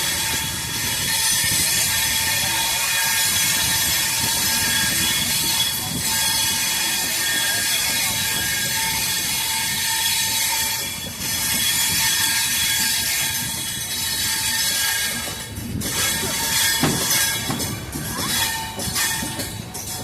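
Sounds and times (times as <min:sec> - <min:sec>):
train wheels squealing on rails: 0:00.0 - 0:20.0
knocks: 0:16.6 - 0:18.0.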